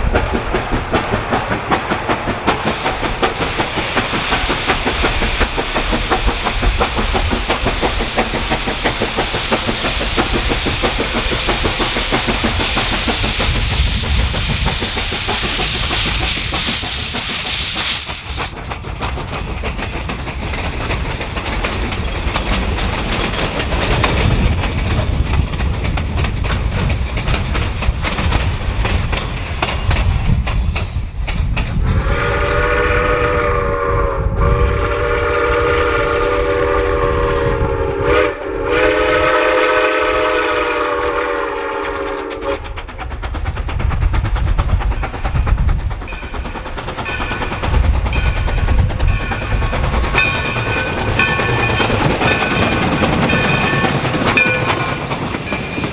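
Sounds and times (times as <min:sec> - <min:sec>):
rail clatter: 0:00.0 - 0:31.8, 0:42.6 - 0:55.9
steam locomotive rumble: 0:00.0 - 0:55.9
loud steam hiss: 0:02.0 - 0:20.8, 0:46.6 - 0:55.9.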